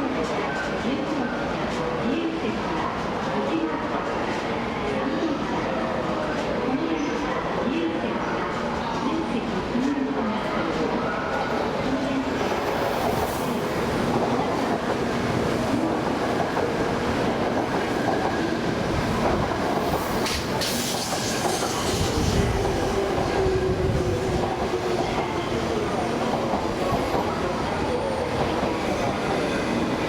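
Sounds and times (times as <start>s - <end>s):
train wheel clatter: 19.2s - 23.5s.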